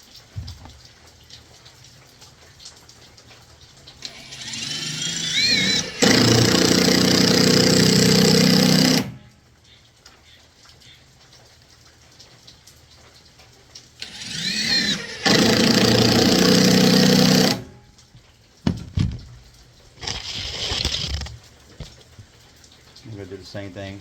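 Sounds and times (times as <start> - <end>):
power drill driving screws: 4.0 - 9.2, 14.0 - 17.8, 20.0 - 21.4
knocks: 18.6 - 19.5.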